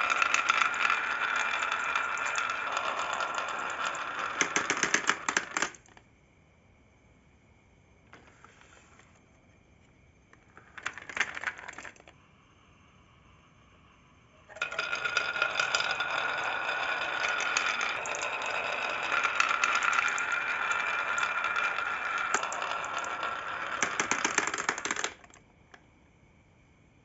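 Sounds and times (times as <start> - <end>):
marbles rolling down track: 0.0 - 6.0, 10.6 - 12.2, 14.5 - 25.4.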